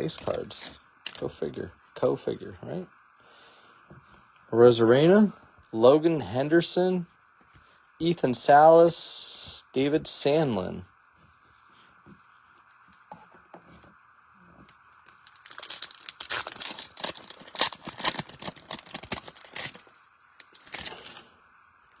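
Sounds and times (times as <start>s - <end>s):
foil wrapper tearing and crinkling: 0.0s - 1.3s, 15.0s - 21.3s.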